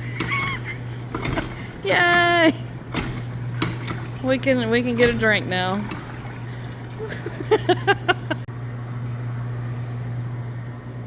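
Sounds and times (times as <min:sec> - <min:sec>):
person laughing: 0:00.0 - 0:00.9, 0:07.0 - 0:08.5
machine humming: 0:00.0 - 0:11.0.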